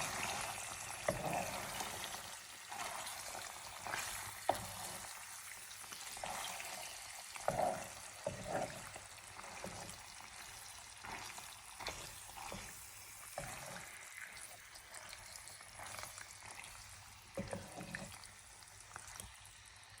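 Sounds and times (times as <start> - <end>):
pasta sizzling in a frying pan: 0.0 - 20.0
utensil scraping and knocking pan: 7.4 - 10.0, 17.4 - 18.1.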